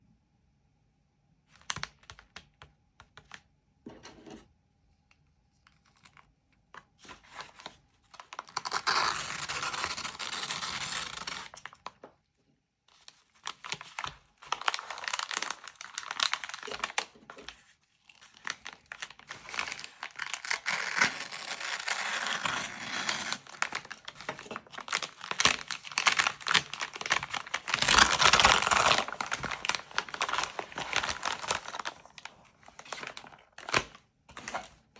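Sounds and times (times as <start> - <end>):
wrapping crinkling and tearing: 7.0 - 12.0, 12.9 - 34.9.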